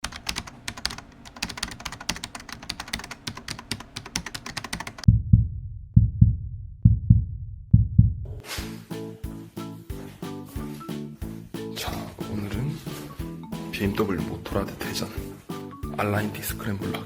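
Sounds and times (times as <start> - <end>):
fast irregular clicking: 0.0 - 5.1
heartbeat thumps: 5.0 - 8.4.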